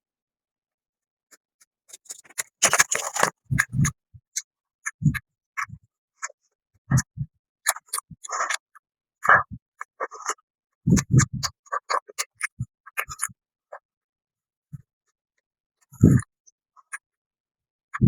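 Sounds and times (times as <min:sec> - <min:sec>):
crunchy bites and chewing: 0:02.0 - 0:03.4.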